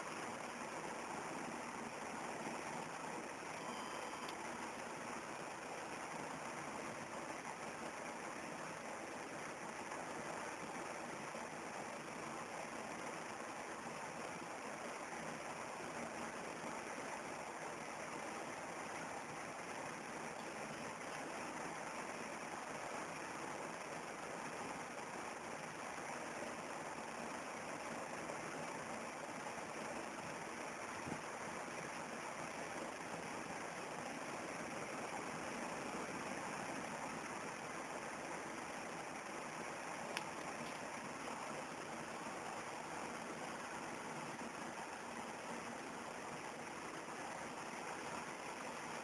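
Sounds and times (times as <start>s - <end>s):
steady background hiss: 0.0s - 49.0s
faint tick: 40.1s - 40.8s.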